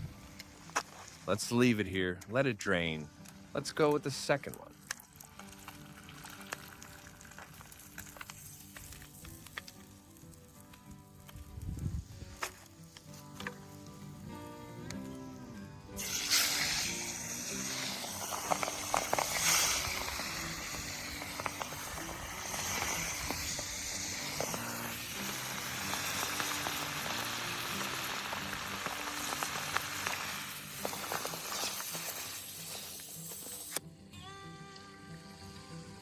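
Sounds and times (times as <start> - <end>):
oil crackles and pops: 3.2 - 15.2, 16.0 - 33.8
fish deep-frying in oil: 4.7 - 10.6, 16.0 - 33.8.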